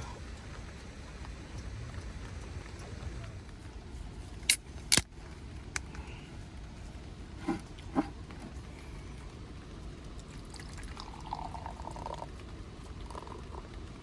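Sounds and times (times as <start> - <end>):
liquid pouring into container: 10.2 - 14.0.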